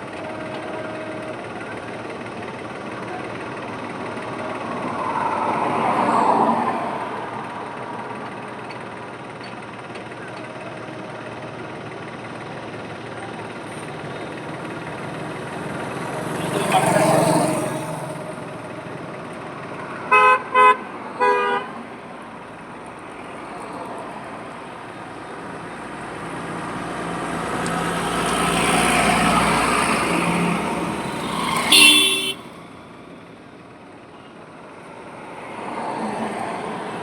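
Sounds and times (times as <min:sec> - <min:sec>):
highway traffic passing: 0:00.0 - 0:10.1, 0:10.8 - 0:37.0
loud horn honk: 0:20.1 - 0:21.8, 0:29.5 - 0:32.8
short horn beeps: 0:31.1 - 0:32.6.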